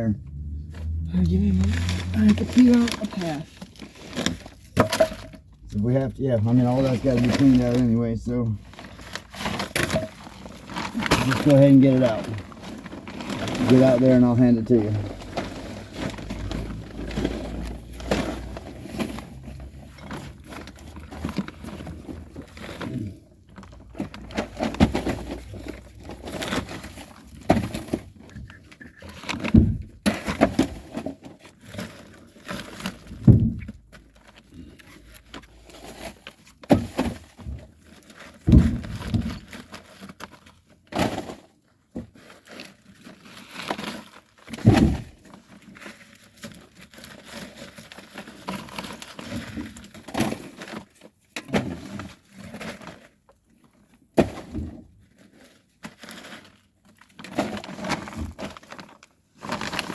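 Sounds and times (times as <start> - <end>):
wood scraps knocking and clattering: 2.2 - 5.6, 8.5 - 13.9, 14.7 - 45.8.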